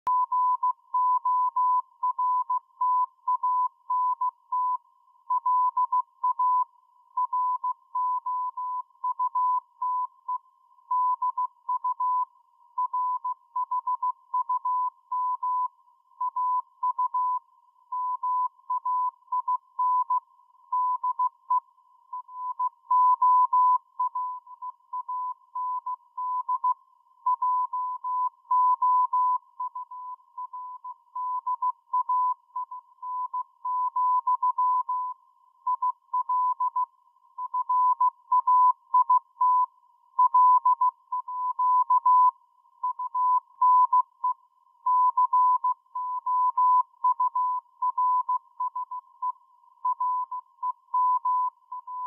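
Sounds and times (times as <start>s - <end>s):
morse code tone pulses: 49.9s - 52.0s.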